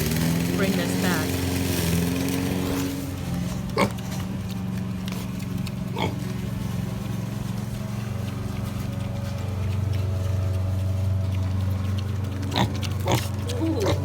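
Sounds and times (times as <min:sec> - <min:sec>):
small engine droning: 0:00.0 - 0:14.0
piglet squeals: 0:13.4 - 0:14.0.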